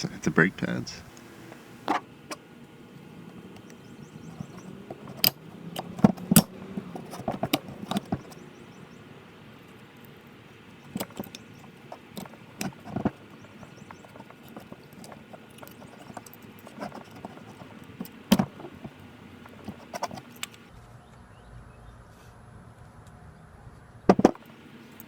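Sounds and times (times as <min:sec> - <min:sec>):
metallic clicks and knocks: 0:24.1 - 0:24.5.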